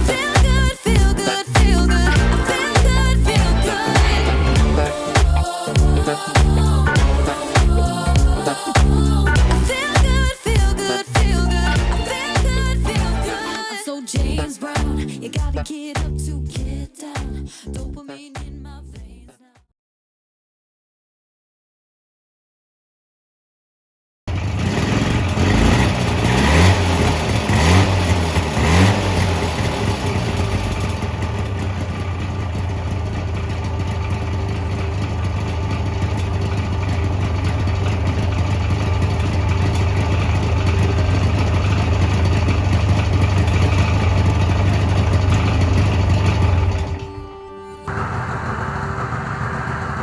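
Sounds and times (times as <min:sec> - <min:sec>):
two-stroke engine revving and idling: 0:00.0 - 0:13.5, 0:24.3 - 0:47.0, 0:47.9 - 0:50.0.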